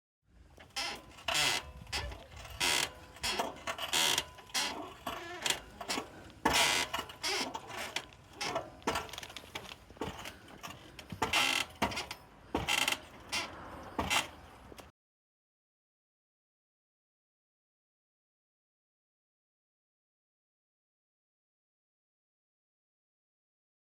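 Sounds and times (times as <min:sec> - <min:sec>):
swing arm squeaking and creaking: 0:00.6 - 0:14.9.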